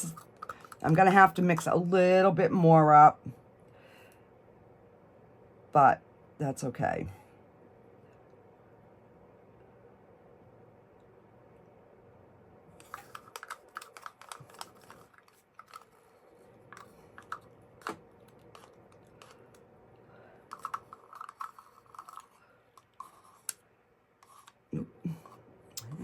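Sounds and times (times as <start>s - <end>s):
plastic supplies clicking: 0.0s - 1.7s, 12.8s - 16.0s, 16.7s - 19.6s, 20.4s - 23.1s.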